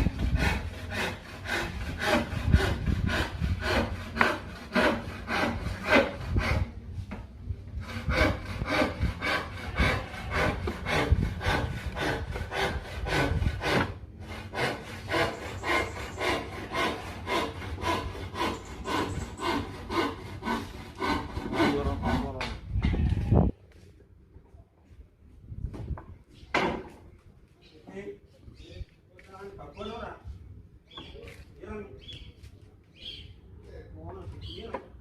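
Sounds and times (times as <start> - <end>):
hand tool scraping wood: 0.0 - 7.2, 7.8 - 22.6.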